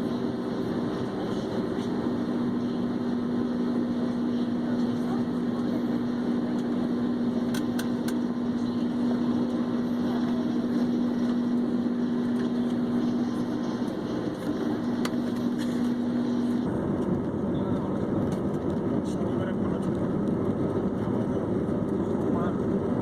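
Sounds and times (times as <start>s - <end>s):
airliner cabin engine noise: 0.0s - 23.0s.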